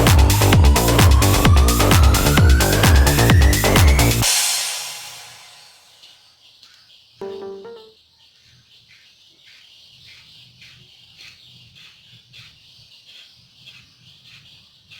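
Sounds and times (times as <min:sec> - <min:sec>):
repeated high chirps: 0:00.0 - 0:04.4, 0:07.2 - 0:07.9.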